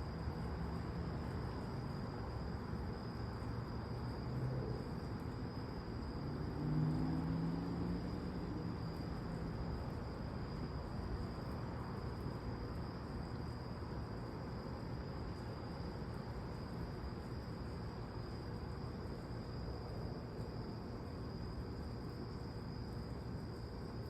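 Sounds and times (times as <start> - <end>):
low background hiss: 0.0 - 24.0
night insects chorus: 0.0 - 24.0.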